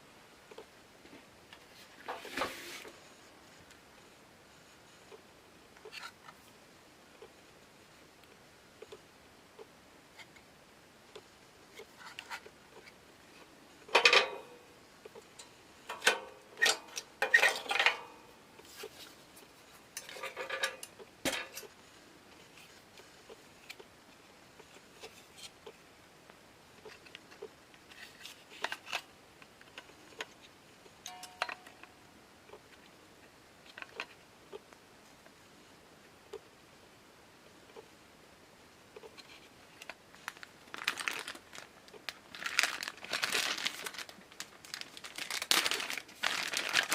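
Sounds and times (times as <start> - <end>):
metal parts clinking and clattering: 13.9 - 14.4, 15.9 - 18.1, 20.0 - 21.7.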